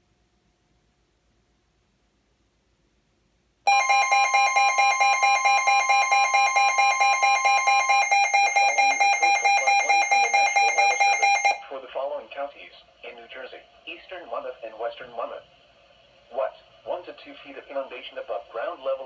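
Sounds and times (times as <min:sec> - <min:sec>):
pulsing electronic alert tone: 0:03.7 - 0:11.6.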